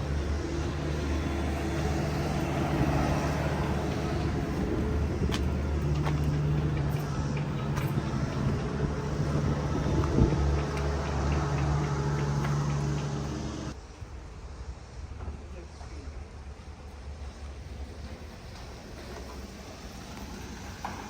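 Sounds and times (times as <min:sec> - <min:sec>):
vehicle engine running: 0:00.0 - 0:13.8.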